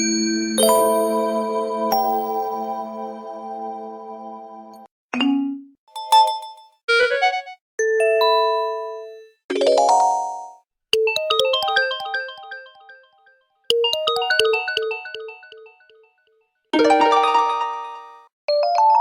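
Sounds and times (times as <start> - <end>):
bright keyboard-like jingle: 0.6 - 3.0, 6.0 - 6.8
synthesized phone chimes: 0.6 - 3.0.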